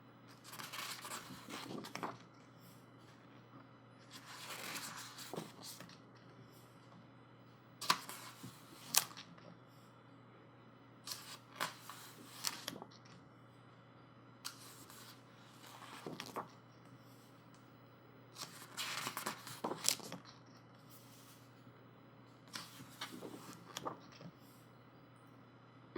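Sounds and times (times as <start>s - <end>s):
book pages turning: 0.3s - 2.3s, 4.0s - 6.0s, 7.8s - 9.3s, 11.1s - 13.1s, 14.5s - 16.6s, 18.4s - 20.3s, 22.5s - 24.3s
sharp paper snaps: 7.8s - 9.3s.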